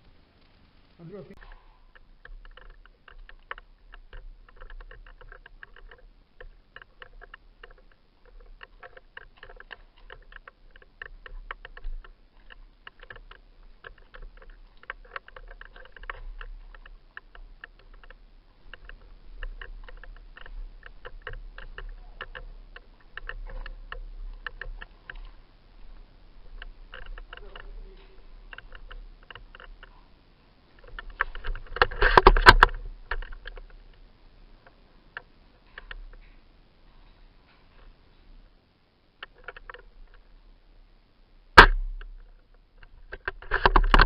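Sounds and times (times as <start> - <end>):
camera handling crackling clicks: 41.6 - 44.0.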